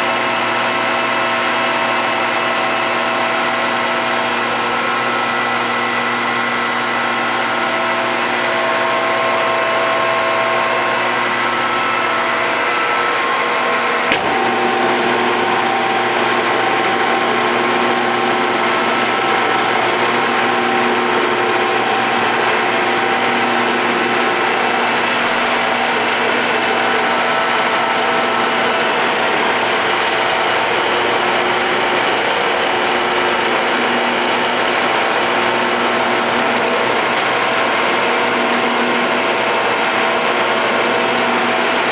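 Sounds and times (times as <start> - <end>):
machine humming with held tones: 0.6 - 41.9
sharp click: 14.1 - 14.6.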